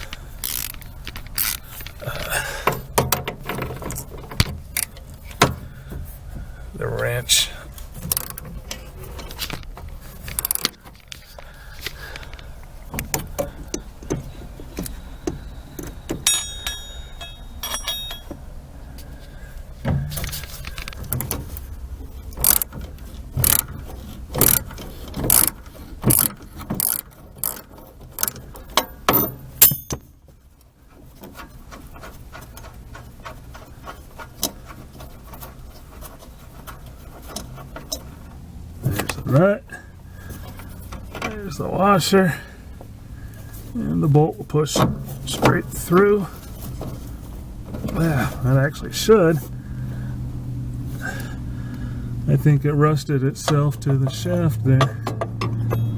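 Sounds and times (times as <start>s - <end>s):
metal tool ratcheting and clicking: 0.0s - 5.0s, 15.8s - 18.4s, 22.4s - 22.8s, 23.4s - 23.8s, 24.4s - 30.0s.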